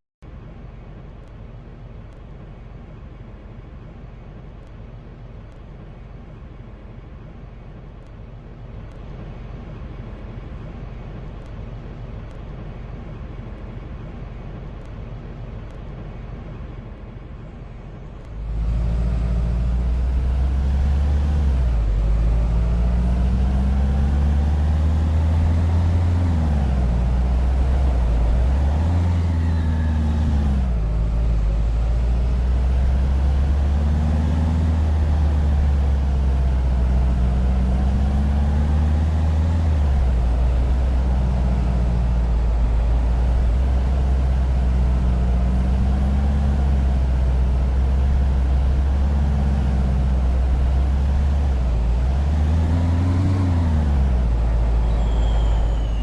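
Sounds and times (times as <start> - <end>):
vehicle low rumble: 0.2 - 56.0
vehicle speeding up and slowing: 18.2 - 56.0.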